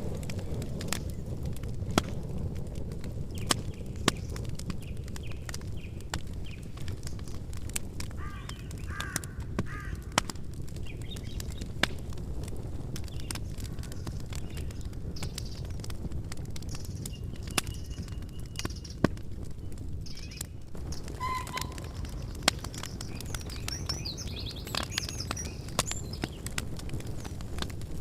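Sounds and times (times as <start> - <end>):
campfire crackling and popping: 0.0 - 28.0
small birds chirping: 3.2 - 7.4, 8.1 - 12.1, 13.0 - 16.0, 16.6 - 27.4.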